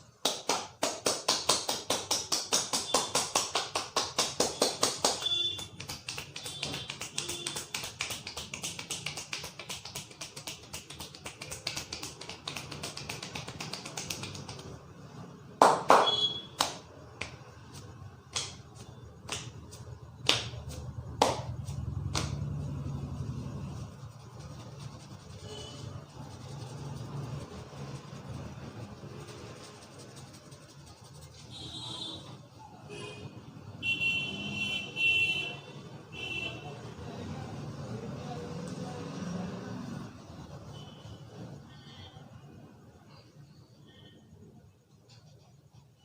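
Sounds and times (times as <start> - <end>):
hands slapping a head: 0.2 - 14.9, 15.6 - 22.6.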